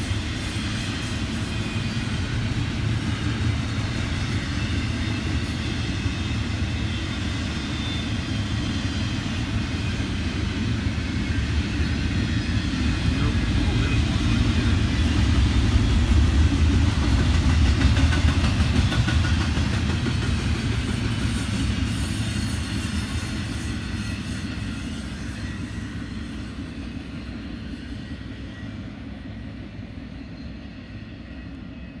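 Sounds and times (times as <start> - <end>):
freight train rumbling on rails: 0.0 - 32.0.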